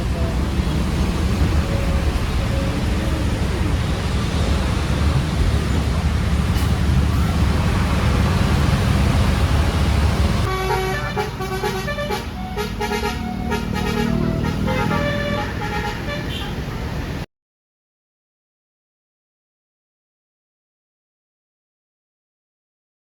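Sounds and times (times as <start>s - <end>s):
bus engines and traffic rumble: 0.0s - 17.3s
multi-tone bus air horn melody: 10.5s - 16.7s.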